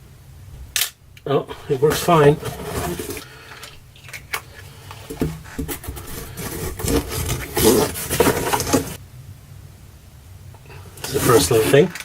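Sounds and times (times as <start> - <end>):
scraping: 1.3 - 9.0, 10.6 - 12.0.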